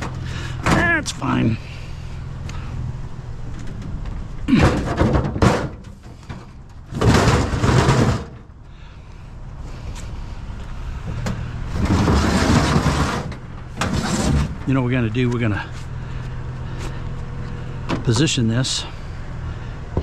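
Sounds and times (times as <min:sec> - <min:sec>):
low vehicle hum: 0:00.0 - 0:20.0
scrap metal scraping and clattering: 0:04.5 - 0:08.5, 0:11.3 - 0:14.7.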